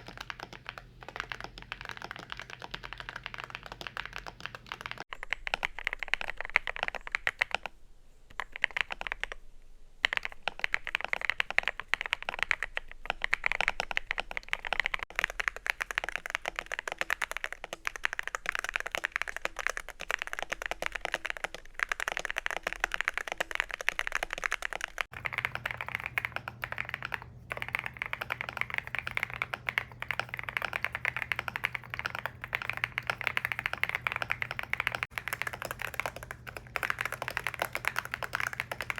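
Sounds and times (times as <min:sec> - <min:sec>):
mechanical keyboard typing: 0:00.0 - 0:07.7, 0:08.3 - 0:09.4, 0:10.0 - 0:38.9
steady low hum: 0:25.1 - 0:38.9.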